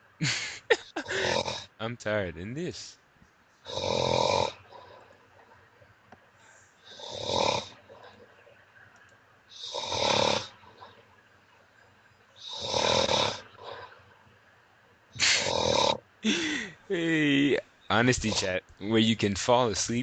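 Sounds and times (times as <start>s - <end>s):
man snoring: 0.5s - 1.6s, 3.7s - 4.9s, 6.9s - 7.8s, 9.6s - 10.5s, 12.4s - 13.4s, 15.2s - 16.8s.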